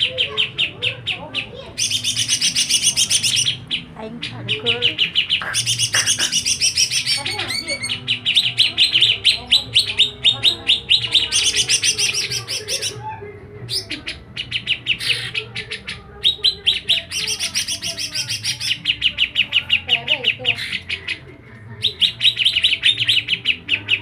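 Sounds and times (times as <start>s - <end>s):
songbird chirping: 0.0s - 24.0s.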